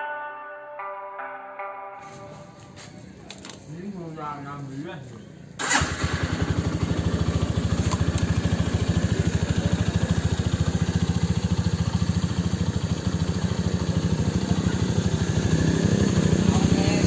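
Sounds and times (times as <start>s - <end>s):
motorcycle engine idling: 5.6s - 17.0s.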